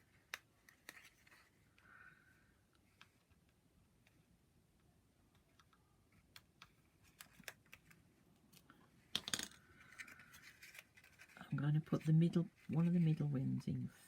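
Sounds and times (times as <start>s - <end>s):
card crackle: 6.2s - 8.6s, 9.6s - 13.3s.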